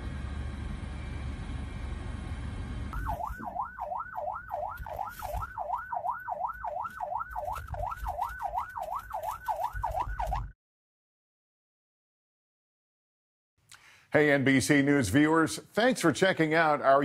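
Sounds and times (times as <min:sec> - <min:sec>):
low vehicle rumble: 0:00.0 - 0:06.6
emergency siren yelping: 0:02.8 - 0:10.6.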